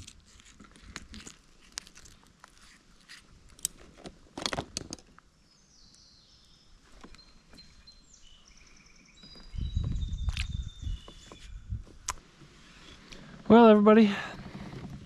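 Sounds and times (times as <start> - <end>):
faint birdsong: 5.2 - 15.0.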